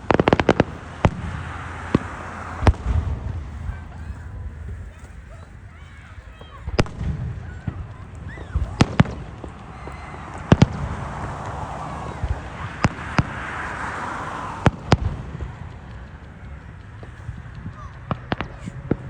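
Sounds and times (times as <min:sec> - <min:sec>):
fireworks crackling hiss: 0:00.0 - 0:19.0
fireworks sharp bangs: 0:00.0 - 0:19.0.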